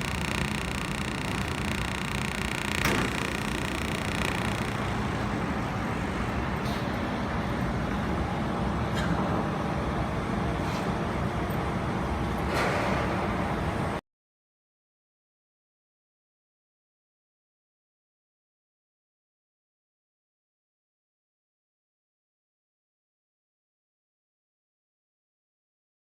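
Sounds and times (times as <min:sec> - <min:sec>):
faint clicks: 0:00.0 - 0:05.3
welding machine humming: 0:00.0 - 0:07.4.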